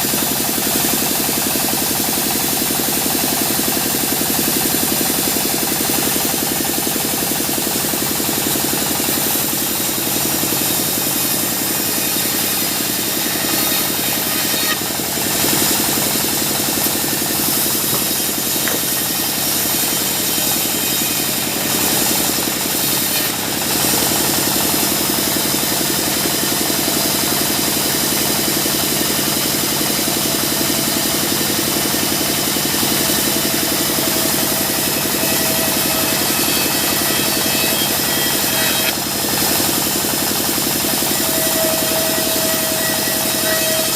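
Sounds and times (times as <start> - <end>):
band saw machinery humming: 0.0 - 43.9.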